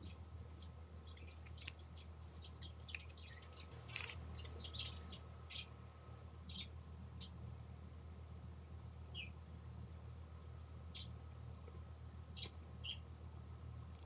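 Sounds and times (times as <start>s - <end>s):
faint steady hum: 0.0s - 14.0s
small plastic and metal parts clicking: 2.9s - 5.0s.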